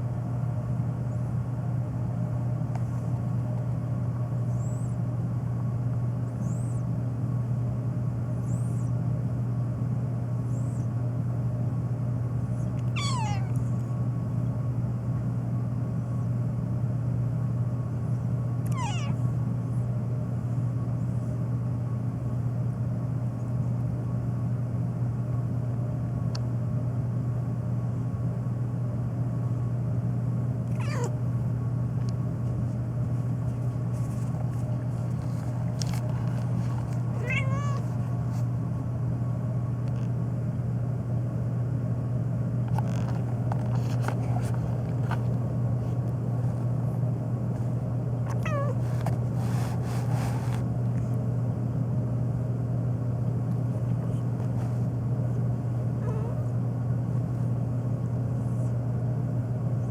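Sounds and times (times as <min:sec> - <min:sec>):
steady low hum: 0:00.0 - 0:59.9
cat meowing: 0:12.8 - 0:13.6, 0:18.6 - 0:19.2, 0:30.7 - 0:31.2, 0:37.1 - 0:38.0, 0:48.3 - 0:48.8, 0:56.0 - 0:56.5.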